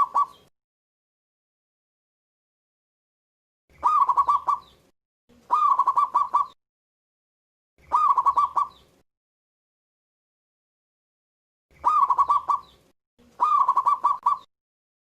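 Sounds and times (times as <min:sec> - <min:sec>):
dove cooing: 0:00.0 - 0:00.4, 0:03.7 - 0:04.7, 0:05.5 - 0:06.6, 0:07.8 - 0:08.8, 0:11.8 - 0:12.7, 0:13.3 - 0:14.5.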